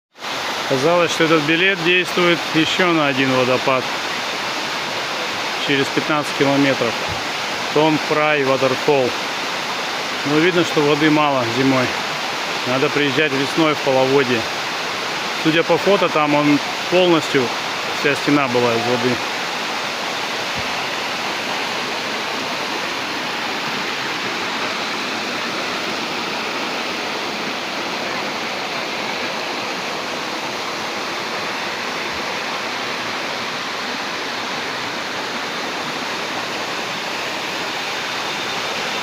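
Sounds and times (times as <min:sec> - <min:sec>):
waterfall rushing: 0:00.2 - 0:39.0.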